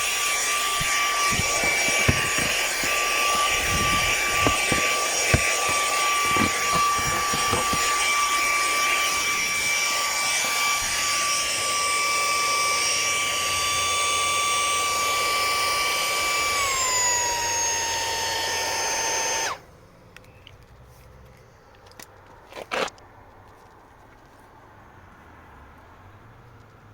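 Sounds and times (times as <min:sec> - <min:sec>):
handheld vacuum cleaner whining: 0:00.0 - 0:19.6
vacuum cleaner clicks: 0:00.7 - 0:10.4.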